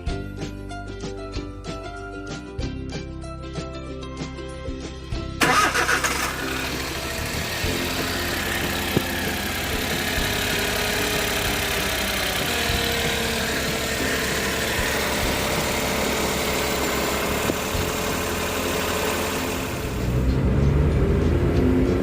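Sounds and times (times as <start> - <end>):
car engine idling: 5.4 - 22.0.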